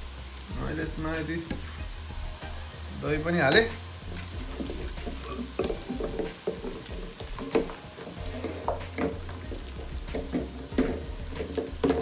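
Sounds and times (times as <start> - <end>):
onions sizzling in a pan: 0.0 - 12.0
spoon stirring and scraping: 1.4 - 12.0.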